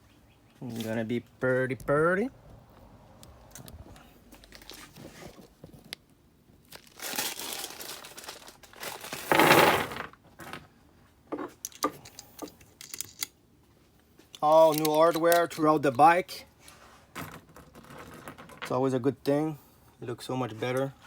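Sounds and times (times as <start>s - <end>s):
plastic packaging crinkling: 6.6s - 9.5s
small metal hardware clicks: 11.6s - 13.4s, 14.3s - 16.0s.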